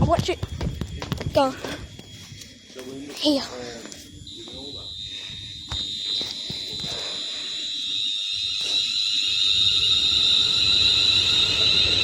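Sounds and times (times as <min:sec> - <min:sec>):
train whine: 0:00.3 - 0:12.0
train low rumble: 0:08.6 - 0:12.0.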